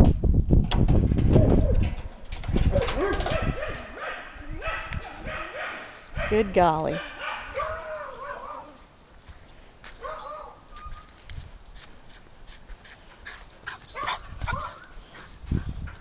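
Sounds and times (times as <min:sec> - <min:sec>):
sharp clicks and rattles: 0:00.0 - 0:03.5
dog whining: 0:07.6 - 0:08.8, 0:10.0 - 0:10.9, 0:13.8 - 0:14.7.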